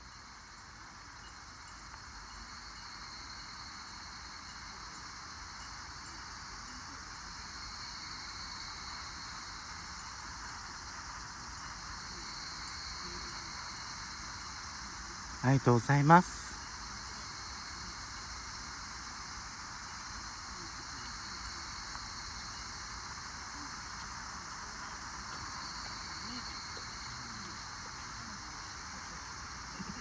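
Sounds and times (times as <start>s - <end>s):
faint wind hiss: 0.0s - 30.0s
thin high steady tone: 11.6s - 30.0s.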